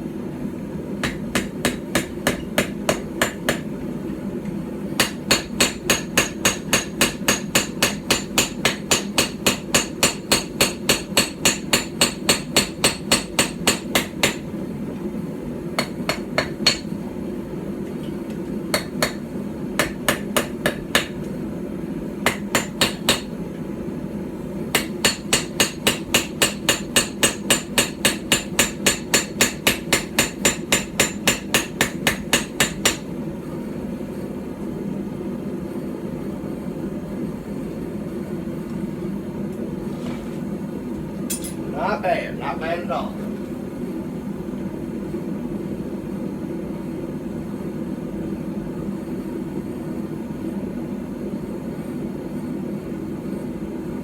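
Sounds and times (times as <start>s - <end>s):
hammer ringing on hot steel: 1.0s - 3.7s, 5.0s - 14.5s, 15.8s - 16.9s, 18.7s - 21.2s, 22.3s - 23.4s, 24.7s - 33.0s.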